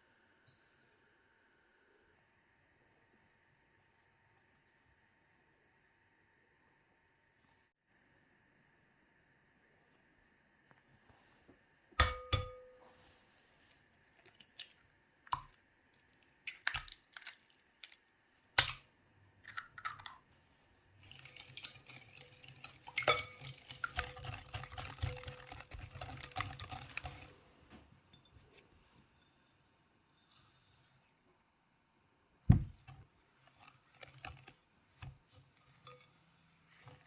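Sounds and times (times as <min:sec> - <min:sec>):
scraping in a mixing bowl: 0:21.0 - 0:27.5, 0:33.0 - 0:37.0.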